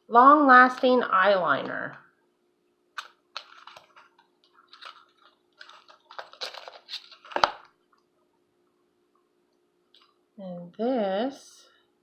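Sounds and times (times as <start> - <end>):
packaging clicks and rustles: 3.0 - 7.8.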